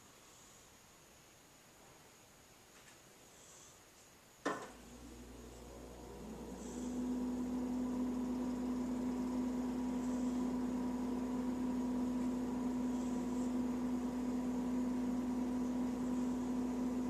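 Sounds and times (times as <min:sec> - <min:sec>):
steady low hum: 0:04.5 - 0:17.0
cat snoring softly: 0:06.3 - 0:07.5, 0:08.5 - 0:16.7.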